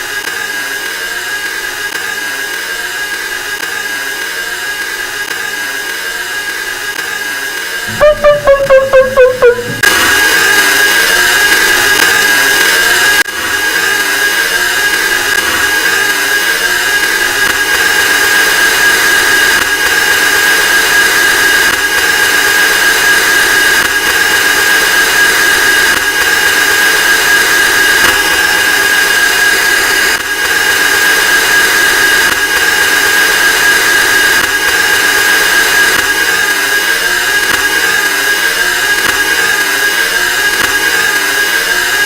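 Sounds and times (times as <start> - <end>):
harsh power-up sound effects: 7.9 - 9.8.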